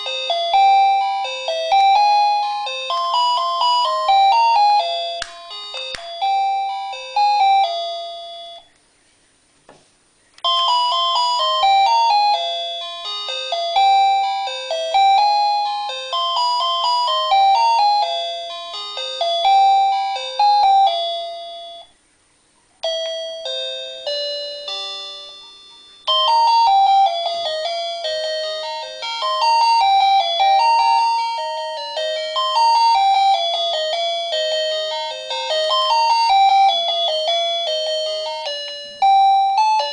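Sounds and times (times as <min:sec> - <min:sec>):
doorbell chime melodies: 0:00.0 - 0:08.7, 0:10.4 - 0:22.0, 0:22.8 - 0:39.9.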